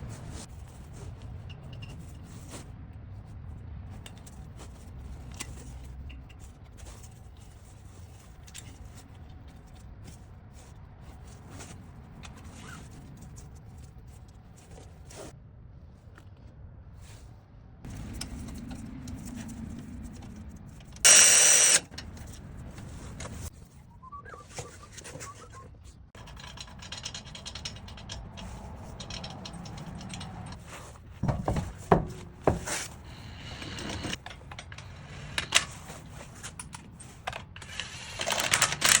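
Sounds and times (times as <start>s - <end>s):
metal brake parts clinking: 26.2s - 39.0s.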